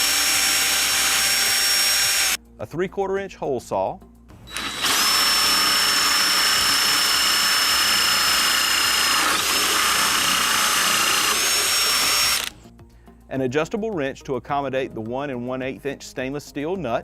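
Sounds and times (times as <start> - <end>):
cordless drill whining: 0.0 - 2.4, 4.5 - 12.6.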